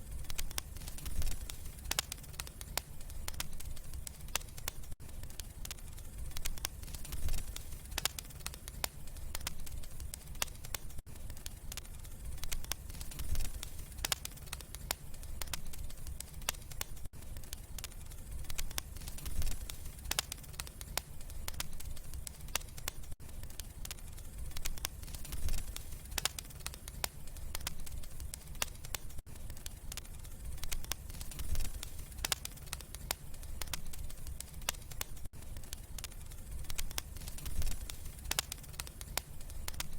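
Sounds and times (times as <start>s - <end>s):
low rumble of flames: 0.0s - 39.9s
wood fire crackling: 0.0s - 39.9s.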